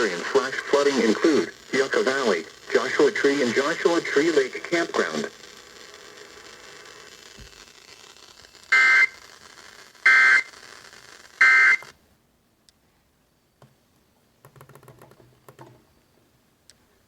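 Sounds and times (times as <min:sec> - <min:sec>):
broadcast channel hiss: 0:00.0 - 0:12.1
two-tone digital data bursts: 0:08.7 - 0:09.2.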